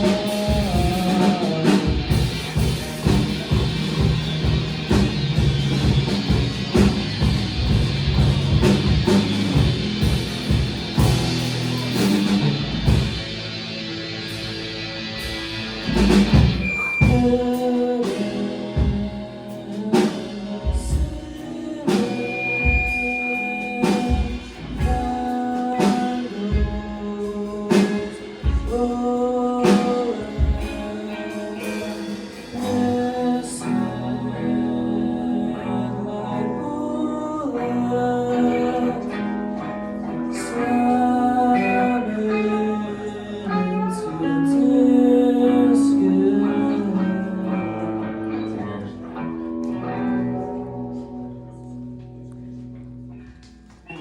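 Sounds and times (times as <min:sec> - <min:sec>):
clean guitar notes: 0:00.0 - 0:54.0
distorted guitar: 0:00.0 - 0:54.0.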